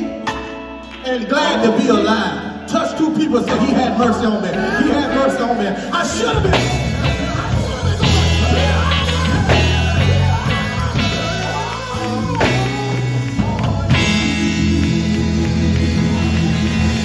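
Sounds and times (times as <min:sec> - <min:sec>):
live gospel band music: 0:00.0 - 0:17.0
person singing: 0:03.5 - 0:17.0.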